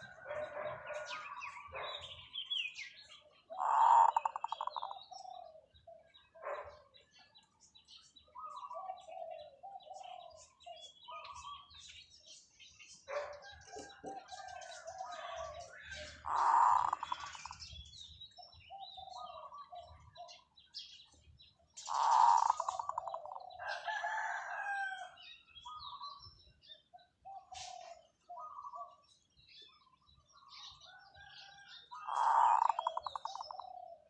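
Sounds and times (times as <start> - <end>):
dove cooing: 0.0 - 2.0, 3.5 - 6.9, 8.4 - 11.8, 13.1 - 20.5, 21.8 - 25.0, 27.2 - 29.1, 30.8 - 34.0
small birds chirping faintly: 0.0 - 34.0.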